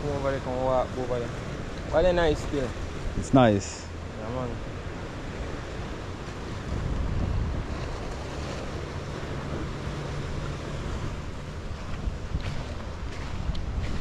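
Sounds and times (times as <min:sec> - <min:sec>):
sea waves washing on rocks: 0:00.1 - 0:14.0
wind buffeting microphone: 0:03.9 - 0:14.0.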